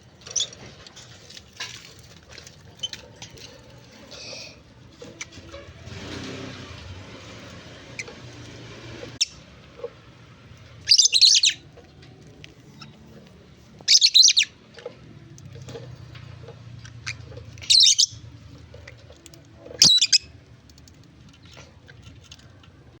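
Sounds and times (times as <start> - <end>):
pet birds chirping: 7.9 - 8.4, 10.6 - 15.0, 16.4 - 20.5.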